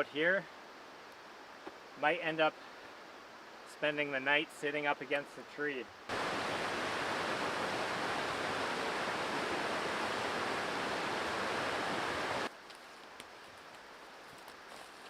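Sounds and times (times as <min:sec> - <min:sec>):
quiet forest ambience: 0:00.0 - 0:15.0
creek water rushing: 0:06.1 - 0:12.5.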